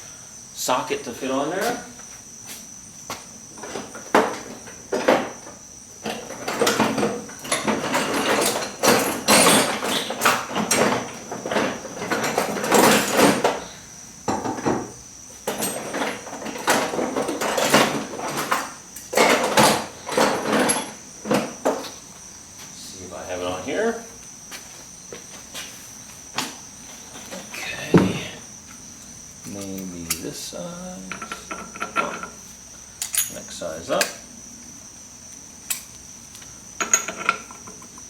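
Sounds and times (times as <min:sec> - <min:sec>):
metal sockets clinking and rattling: 0:33.0 - 0:33.4, 0:36.8 - 0:37.9.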